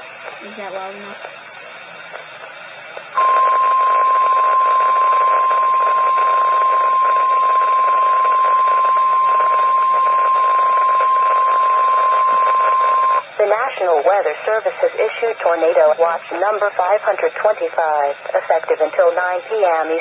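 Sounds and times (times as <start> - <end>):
radio hiss and static: 0.0 - 20.0
steady warning alarm tone: 3.2 - 13.6.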